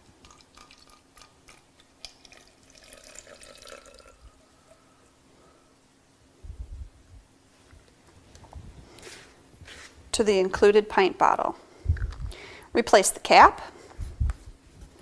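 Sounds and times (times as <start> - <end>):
faint clicks and drips: 0.2 - 4.2
water trickling into a bottle: 0.2 - 4.4.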